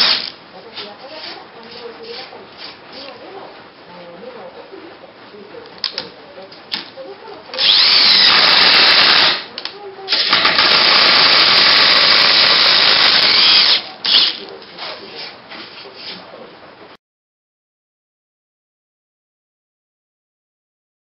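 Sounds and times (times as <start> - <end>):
electric drill boring into wood: 7.6 - 9.5, 10.1 - 14.4.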